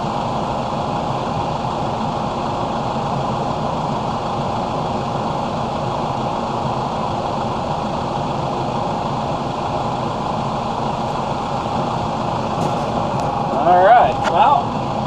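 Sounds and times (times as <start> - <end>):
tractor diesel engine running: 0.0 - 15.0
high whine: 10.7 - 15.0.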